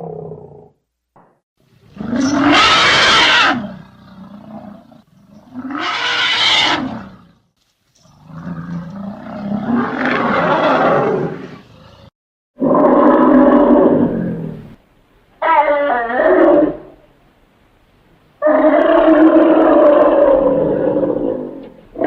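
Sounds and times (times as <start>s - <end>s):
elephant trumpeting: 2.0s - 3.8s, 5.6s - 7.0s.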